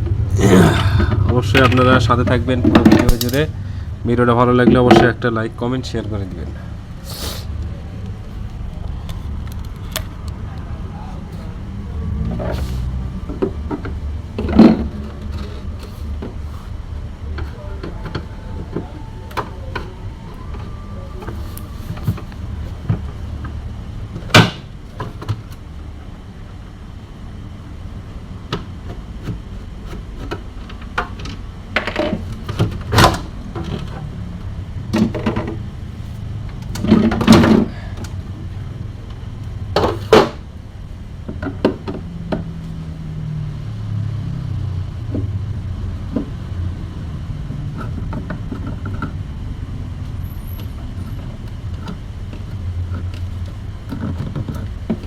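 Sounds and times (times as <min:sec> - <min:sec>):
steady low rumble: 0:00.0 - 0:04.6.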